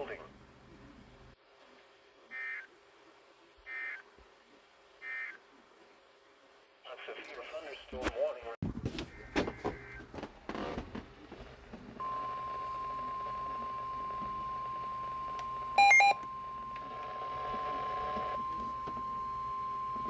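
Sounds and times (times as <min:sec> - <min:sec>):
steady weather alert tone: 0:12.0 - 0:16.8
touch-tone beeps: 0:12.0 - 0:17.3.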